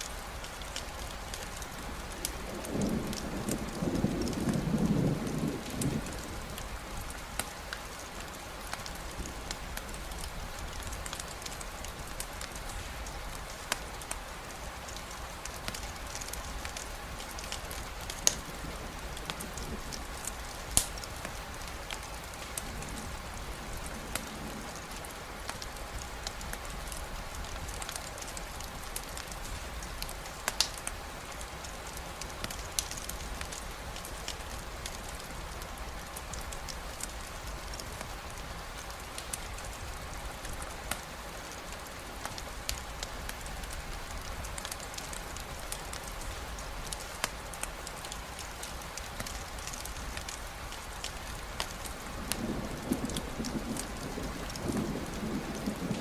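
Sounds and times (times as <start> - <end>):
campfire popping and crackling: 0.0 - 56.0
steady rainfall: 0.0 - 56.0
low thunder rumble: 1.8 - 7.4, 51.8 - 56.0.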